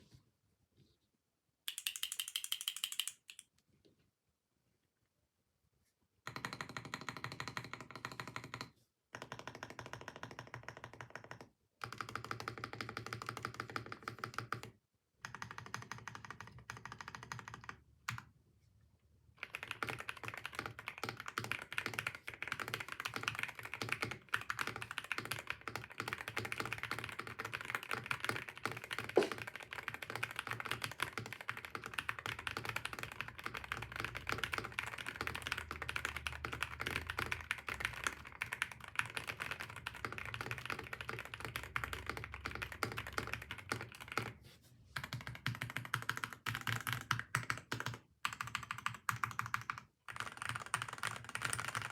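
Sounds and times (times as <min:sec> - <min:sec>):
mechanical keyboard typing: 0:01.7 - 0:03.4, 0:06.3 - 0:18.3, 0:19.4 - 0:44.4, 0:45.0 - 0:51.9.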